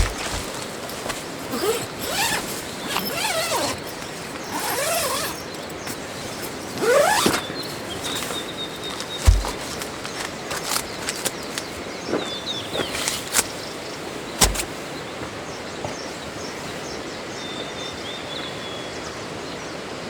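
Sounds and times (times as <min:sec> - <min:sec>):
soft thud: 0:09.0 - 0:10.7, 0:14.4 - 0:14.8.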